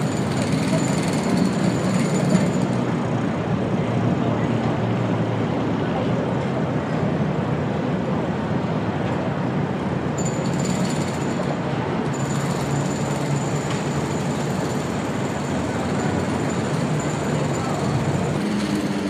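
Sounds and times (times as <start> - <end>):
jackhammer rattling: 0.0 - 2.8, 10.2 - 11.4, 12.2 - 19.0
city noise: 0.0 - 19.0.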